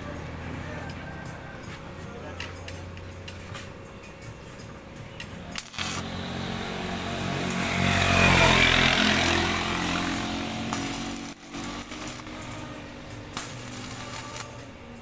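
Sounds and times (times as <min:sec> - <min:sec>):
motorcycle engine passing by: 0:05.4 - 0:14.5.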